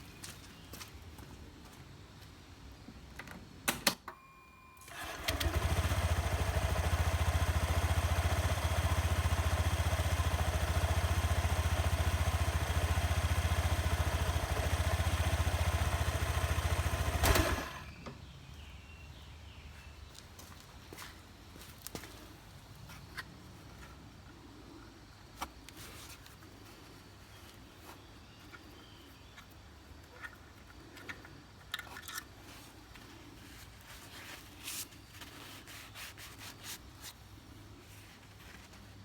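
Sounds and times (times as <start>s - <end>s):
scooter engine starting and idling: 4.1s - 18.1s.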